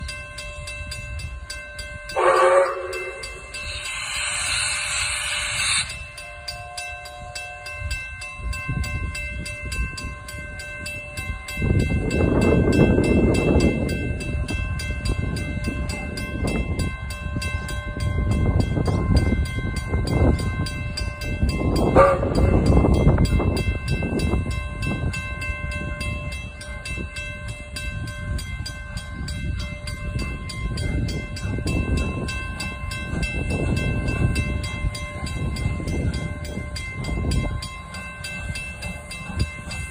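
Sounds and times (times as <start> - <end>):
locomotive exhaust chuffs: 2.2 - 6.6
steam whistle blast: 2.2 - 6.6
steam hissing: 2.3 - 7.2.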